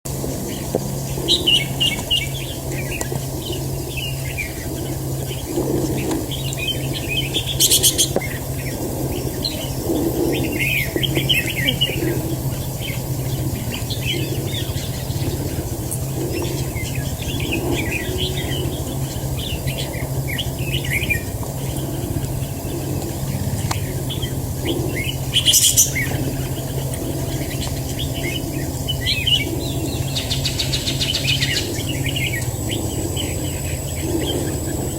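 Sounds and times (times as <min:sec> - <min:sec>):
steady low hum: 0:00.0 - 0:34.9
bulbuls chirping: 0:00.1 - 0:34.9.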